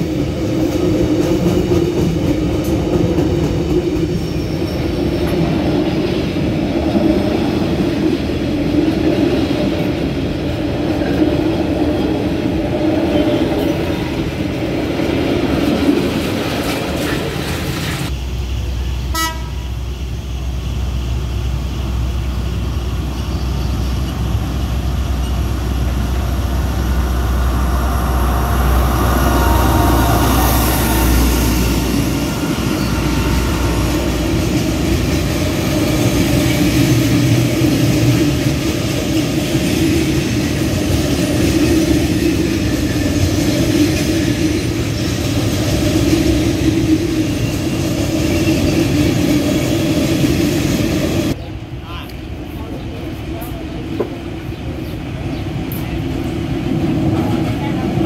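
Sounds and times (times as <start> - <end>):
train rumbling past: 0.0 - 58.0
train horn: 19.1 - 19.7, 27.0 - 35.0.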